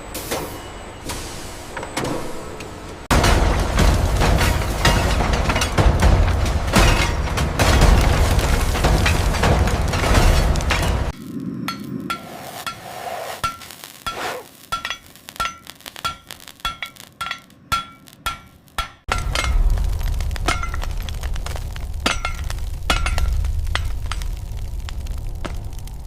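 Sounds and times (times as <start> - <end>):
heavy machinery rumble: 0.6 - 11.2, 19.1 - 26.0.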